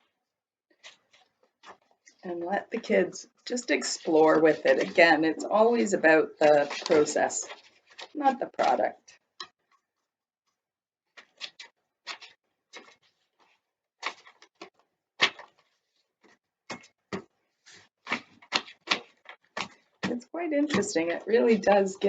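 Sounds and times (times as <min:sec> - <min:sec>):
cardboard tube tapping paper: 0:11.1 - 0:21.8.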